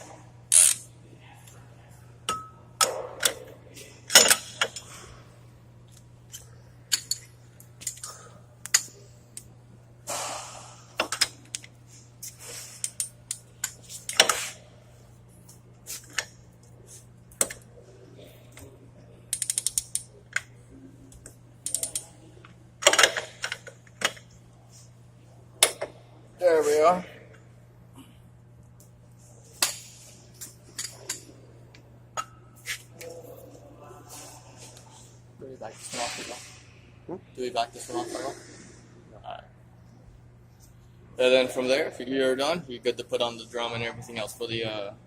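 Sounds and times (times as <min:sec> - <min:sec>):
torque wrench ratchet clicking: 0:00.5 - 0:00.8, 0:19.3 - 0:20.1.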